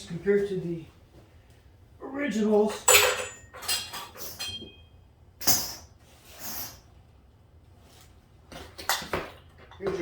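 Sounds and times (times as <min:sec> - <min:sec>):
metal springs clinking: 0:02.7 - 0:05.9.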